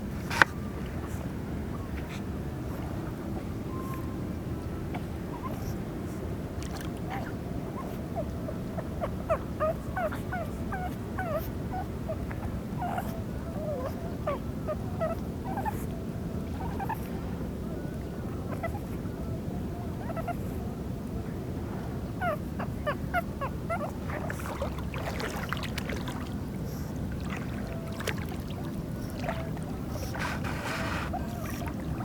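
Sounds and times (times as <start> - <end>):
dog whining and whimpering: 3.7 - 4.2, 4.9 - 5.8, 7.0 - 12.2, 12.8 - 17.2, 18.4 - 19.0, 20.0 - 20.6, 22.2 - 25.6, 26.6 - 32.0
background noise rush: 15.3 - 32.0.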